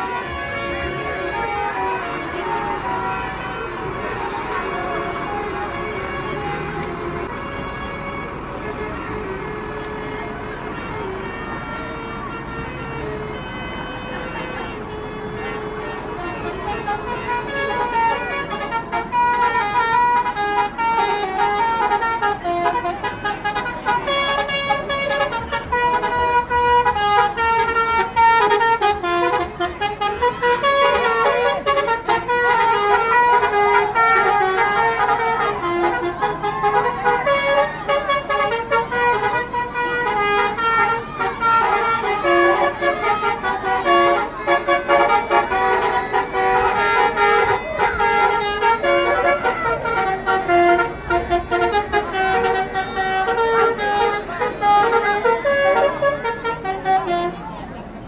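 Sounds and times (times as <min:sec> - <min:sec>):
musical bus horns playing tunes: 0:00.0 - 0:58.0.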